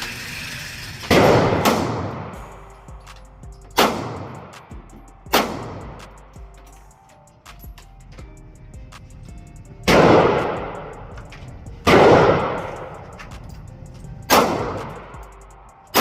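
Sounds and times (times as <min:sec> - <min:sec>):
gunshots with echo: 0:01.1 - 0:02.6, 0:03.8 - 0:06.1, 0:09.9 - 0:11.2, 0:11.8 - 0:13.2, 0:14.3 - 0:15.2.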